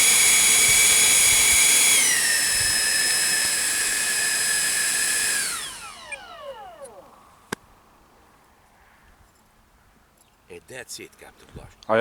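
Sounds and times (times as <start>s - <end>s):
electric ducted fan whining: 0.0s - 7.6s.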